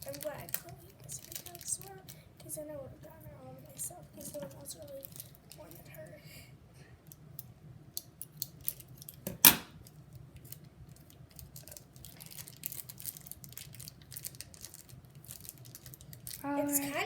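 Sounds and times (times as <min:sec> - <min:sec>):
packaging clicks and rustles: 0:00.0 - 0:02.2, 0:03.7 - 0:06.0, 0:08.3 - 0:16.5.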